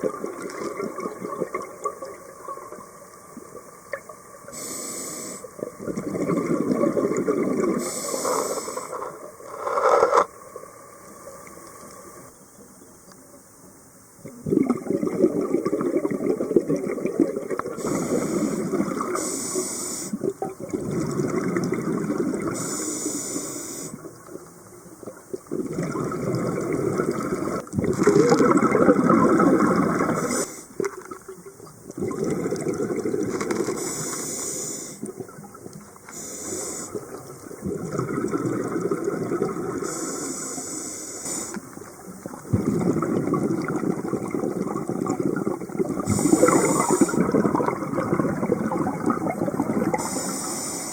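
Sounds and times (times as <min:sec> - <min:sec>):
gurgling exhaled bubbles: 0:00.0 - 0:09.0, 0:14.2 - 0:19.2, 0:20.1 - 0:22.8, 0:25.0 - 0:34.1, 0:35.0 - 0:40.4, 0:42.0 - 0:50.9
regulator inhale hiss: 0:04.5 - 0:05.6, 0:07.8 - 0:10.2, 0:17.8 - 0:20.2, 0:22.5 - 0:24.1, 0:30.1 - 0:30.9, 0:33.7 - 0:35.1, 0:36.1 - 0:37.2, 0:39.8 - 0:41.8, 0:46.0 - 0:47.4, 0:49.9 - 0:50.9.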